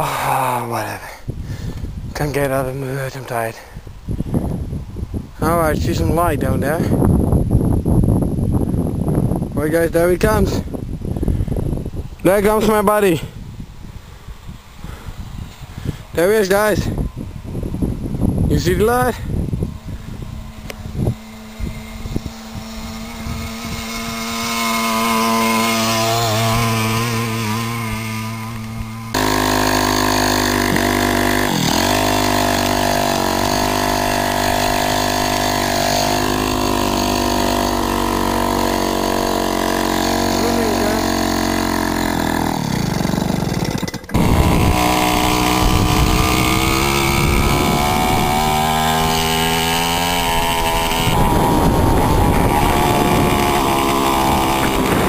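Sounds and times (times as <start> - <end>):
moped engines running: 15.4 - 55.0.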